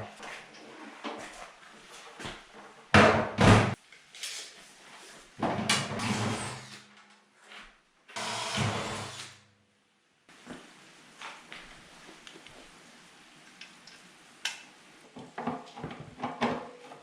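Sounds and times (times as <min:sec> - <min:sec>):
electric drill drilling: 0:08.2 - 0:09.3.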